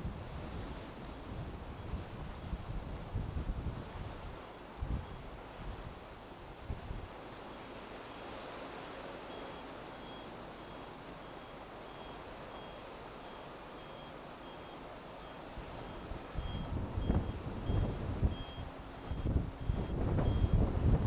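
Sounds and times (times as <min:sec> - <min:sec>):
strong wind: 0:00.0 - 0:07.1, 0:15.6 - 0:21.0
rough sea: 0:00.0 - 0:21.0
vehicle reversing alarm beeps: 0:09.2 - 0:20.6.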